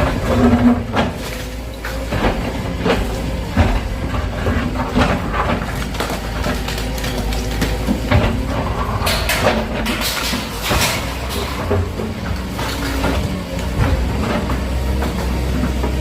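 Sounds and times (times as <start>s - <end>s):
demolition knocks and clatter: 0.0s - 16.0s
excavator engine running: 0.0s - 16.0s.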